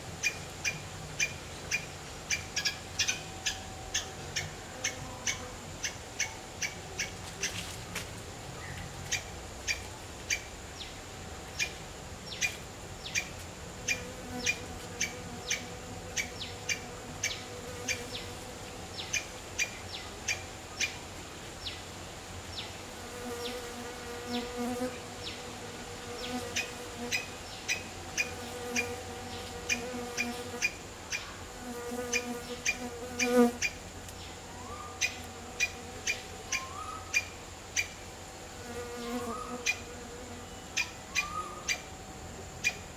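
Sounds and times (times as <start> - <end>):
flying insect buzzing: 13.8 - 19.7, 22.6 - 34.1, 35.2 - 36.6, 37.3 - 40.7.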